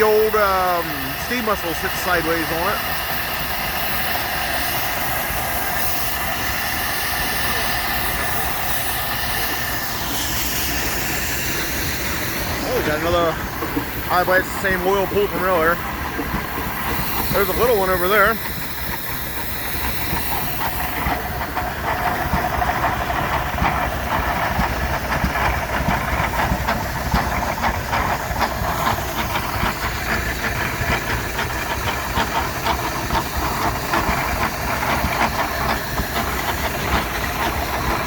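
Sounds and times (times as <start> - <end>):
machinery clattering: 0.0 - 38.0
steam engine hissing: 0.0 - 38.0.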